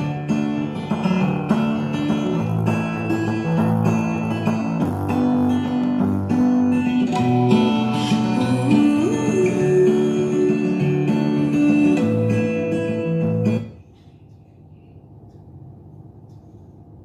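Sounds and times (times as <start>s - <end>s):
low bass notes: 0.0s - 12.6s
guitar music from speaker: 0.0s - 13.8s.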